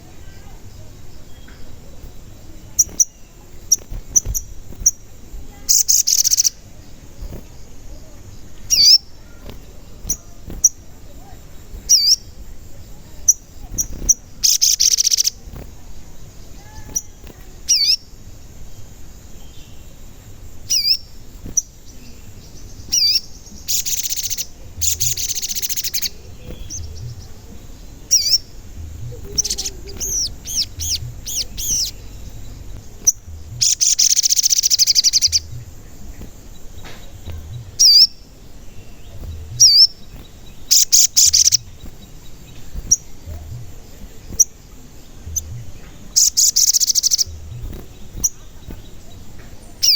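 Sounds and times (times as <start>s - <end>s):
bird rapid chattering: 0.0s - 49.9s
bird whistling sharp notes: 40.6s - 41.8s.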